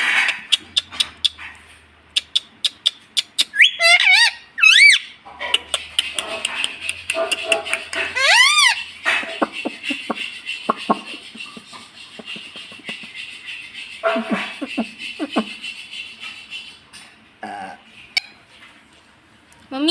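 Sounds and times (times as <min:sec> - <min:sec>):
parrot chirps and clicks: 0:00.0 - 0:11.4
parrot warbling call: 0:03.5 - 0:05.2, 0:07.9 - 0:09.5.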